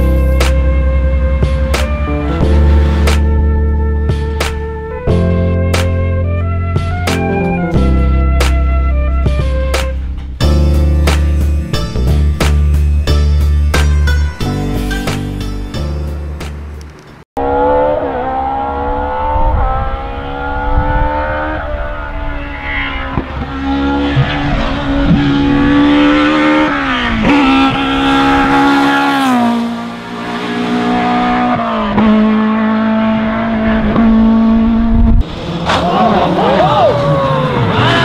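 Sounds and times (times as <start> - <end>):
rally car engine revving: 0.0 - 7.3, 16.6 - 38.0
burst of music: 0.0 - 16.6.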